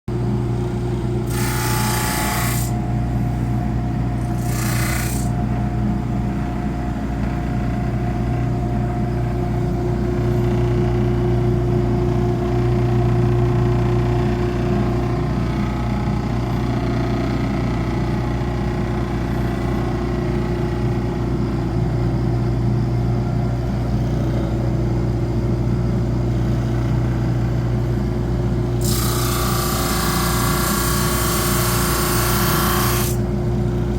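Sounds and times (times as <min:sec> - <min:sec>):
power tool motor humming: 0:01.3 - 0:02.8, 0:04.2 - 0:05.4, 0:28.8 - 0:33.2.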